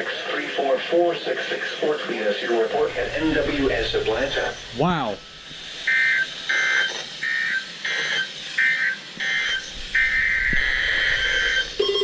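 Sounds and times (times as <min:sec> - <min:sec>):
digital data bursts: 0:02.8 - 0:12.0.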